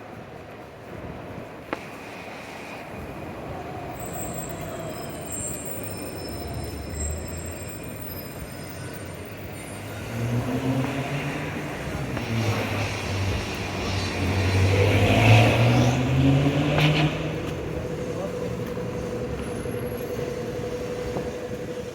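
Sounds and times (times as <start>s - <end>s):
street traffic rumbling: 0.0s - 21.9s
thin high squeal: 4.0s - 10.0s
vehicle engine: 9.3s - 21.9s.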